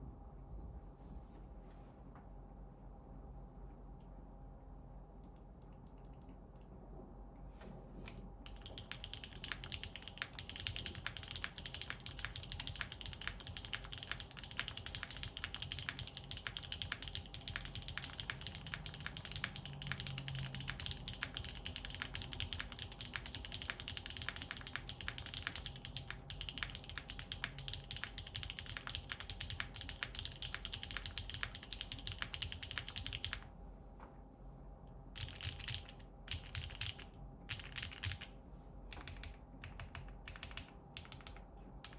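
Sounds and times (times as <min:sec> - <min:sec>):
mechanical keyboard typing: 0:05.2 - 0:06.7, 0:08.4 - 0:33.5, 0:35.2 - 0:38.3, 0:38.9 - 0:41.9.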